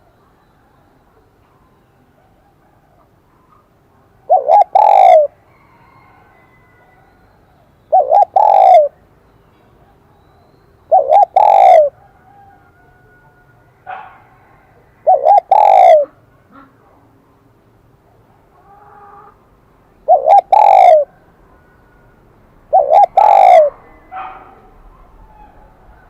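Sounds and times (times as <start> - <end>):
dove cooing: 4.2 - 5.4, 7.9 - 9.0, 10.9 - 12.5, 15.0 - 16.8, 20.0 - 26.0.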